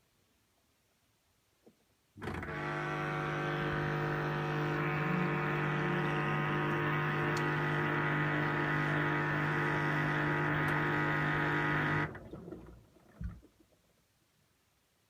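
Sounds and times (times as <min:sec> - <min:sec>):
washing machine buzzing: 0:02.2 - 0:12.9.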